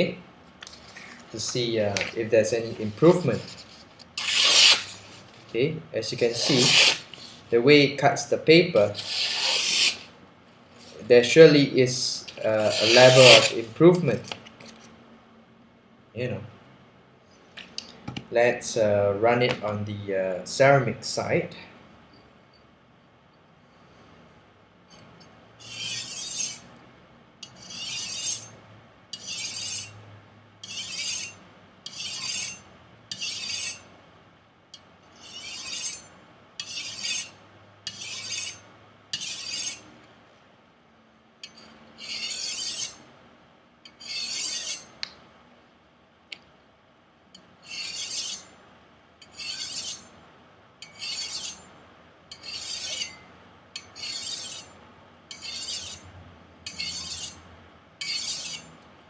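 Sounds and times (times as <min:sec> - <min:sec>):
knife scraping on ceramic sharpener: 0:03.4 - 0:05.0, 0:06.4 - 0:07.3, 0:09.0 - 0:10.1, 0:12.6 - 0:13.6, 0:25.7 - 0:26.7, 0:27.4 - 0:28.5, 0:29.2 - 0:30.0, 0:30.6 - 0:33.9, 0:35.1 - 0:38.6, 0:39.2 - 0:39.8, 0:41.4 - 0:43.0, 0:43.9 - 0:44.9, 0:47.6 - 0:48.5, 0:49.2 - 0:50.1, 0:50.8 - 0:51.6, 0:52.3 - 0:53.2, 0:53.8 - 0:54.7, 0:55.3 - 0:56.0, 0:56.7 - 0:57.4, 0:58.0 - 0:58.6.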